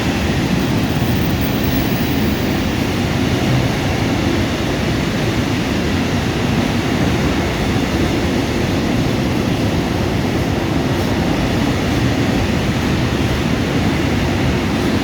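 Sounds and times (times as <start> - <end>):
train wheels rumbling on rails: 0.0 - 4.1.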